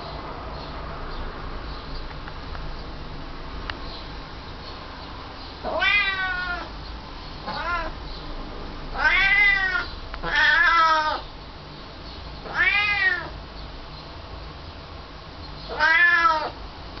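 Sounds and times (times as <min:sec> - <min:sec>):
cat meowing: 0:05.6 - 0:06.7, 0:07.4 - 0:08.0, 0:08.9 - 0:11.2, 0:12.4 - 0:13.4, 0:15.7 - 0:16.6.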